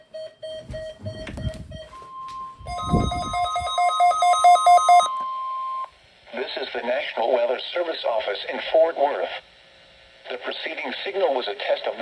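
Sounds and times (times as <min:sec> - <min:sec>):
steady alarm tone: 0:00.0 - 0:05.9
rapid pulsed beeps: 0:02.7 - 0:05.9.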